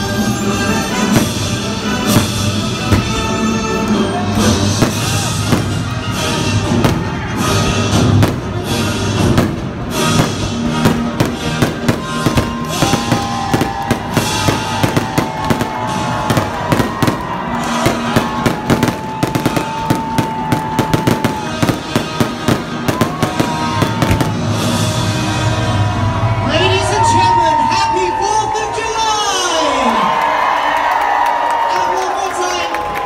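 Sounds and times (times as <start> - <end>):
loud music: 0.0 - 29.6
fireworks bursting and crackling: 0.3 - 25.5.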